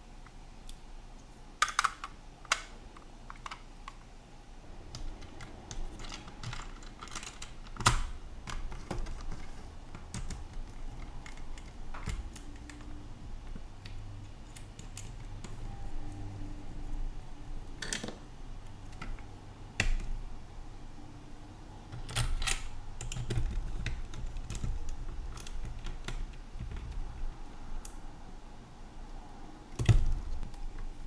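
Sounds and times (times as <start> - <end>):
plastic parts clicking and snapping: 1.6 - 4.1, 4.8 - 15.6, 17.6 - 20.3, 21.9 - 28.0.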